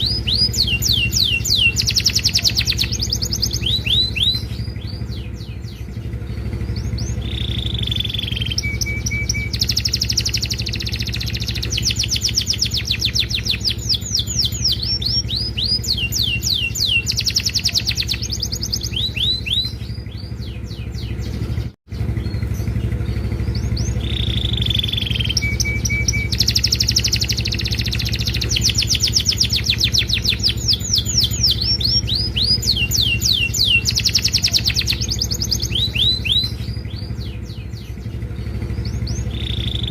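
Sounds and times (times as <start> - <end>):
canary singing trills: 0.0 - 39.9
steady low hum: 0.0 - 39.9.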